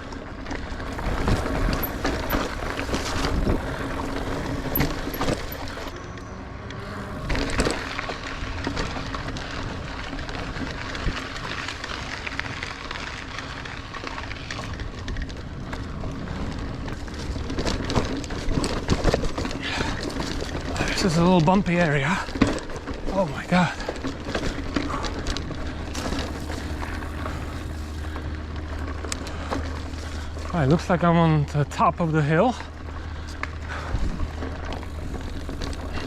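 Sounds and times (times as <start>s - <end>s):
bike rattling and knocking: 0.0s - 36.0s
bike tyres on dirt: 0.0s - 36.0s.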